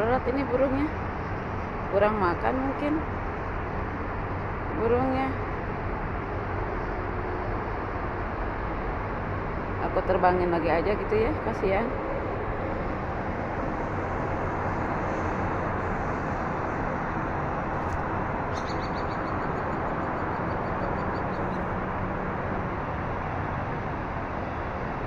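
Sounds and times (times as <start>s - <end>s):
rushing outdoor background noise: 0.0s - 25.0s
bird rapid high calls: 18.5s - 21.6s.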